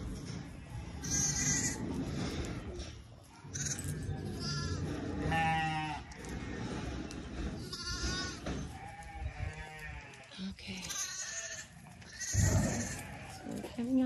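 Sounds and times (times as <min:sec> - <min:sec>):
sheep bleating: 0:01.0 - 0:01.8, 0:03.5 - 0:06.2, 0:07.6 - 0:13.7.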